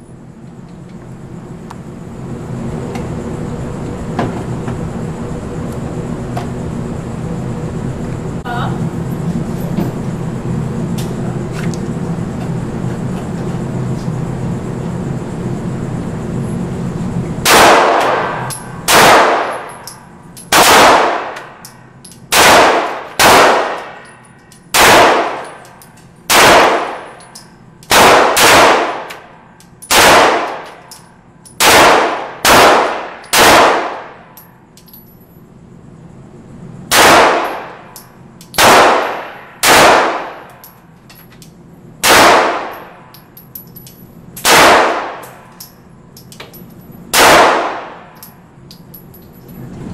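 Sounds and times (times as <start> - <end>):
steady low hum: 0.0 - 49.9
pistol shots: 17.4 - 19.9, 20.5 - 21.6, 22.3 - 24.1, 24.7 - 25.6, 26.3 - 27.2, 27.9 - 30.8, 31.6 - 34.2, 36.9 - 37.9, 38.5 - 40.5, 42.0 - 43.0, 44.4 - 45.5, 47.1 - 48.2.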